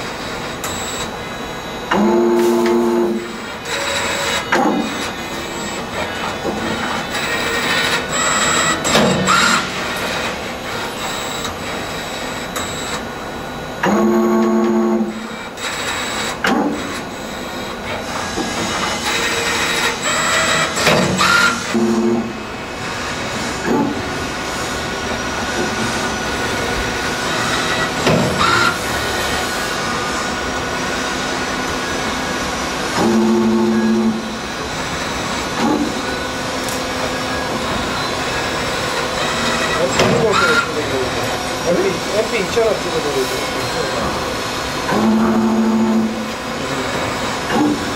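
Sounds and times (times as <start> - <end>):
motors whining: 0.0 - 47.9
spring forming machine running: 0.0 - 47.9
steady mechanical hum: 0.0 - 47.9.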